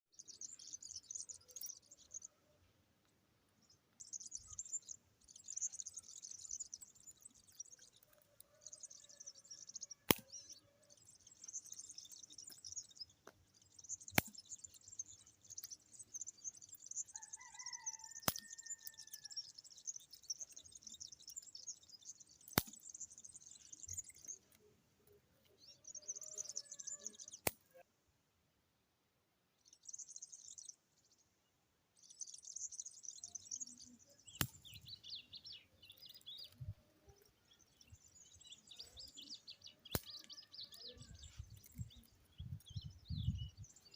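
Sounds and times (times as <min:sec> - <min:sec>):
small birds chirping: 0:00.0 - 0:27.9, 0:29.4 - 0:43.9
sharp clicks: 0:14.1 - 0:14.5.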